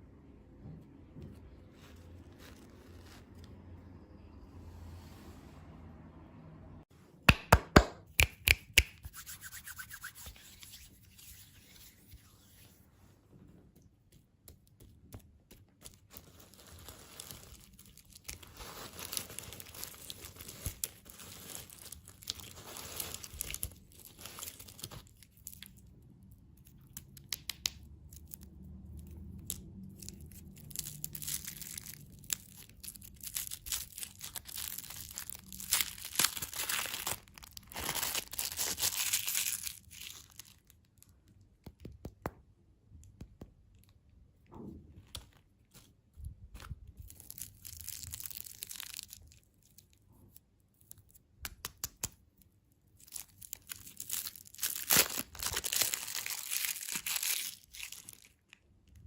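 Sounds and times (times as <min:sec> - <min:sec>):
wrappers tearing and crinkling: 0:15.8 - 0:25.8, 0:29.4 - 0:41.1, 0:47.0 - 0:49.9, 0:53.0 - 0:58.6.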